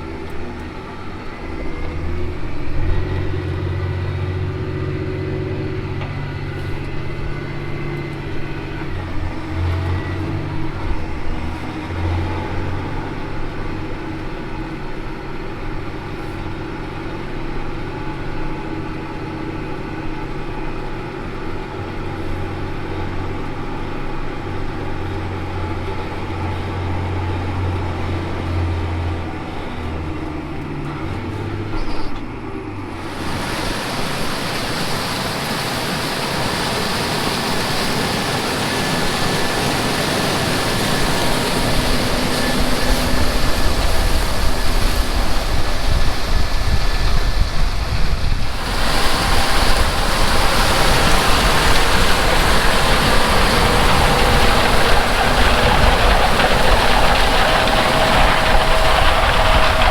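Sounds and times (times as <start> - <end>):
tractor diesel engine droning: 0.0 - 59.9.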